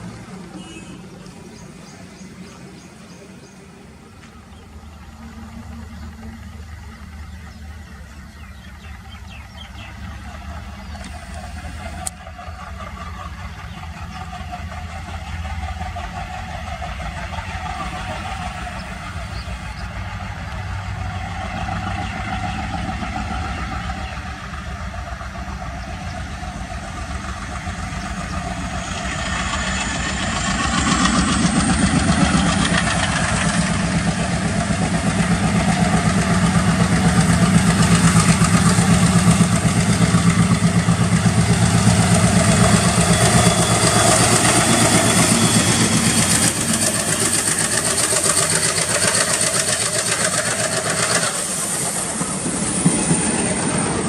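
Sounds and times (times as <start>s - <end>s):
diesel locomotive engine chugging: 0.0s - 54.0s
hiss: 32.3s - 53.6s.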